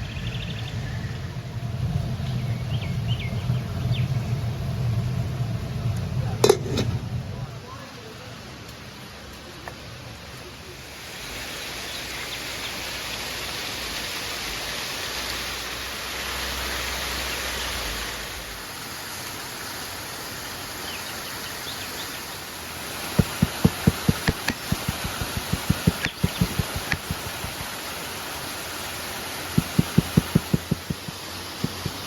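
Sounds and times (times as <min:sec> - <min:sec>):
quick run of knocks: 0:23.2 - 0:27.8, 0:29.6 - 0:32.0.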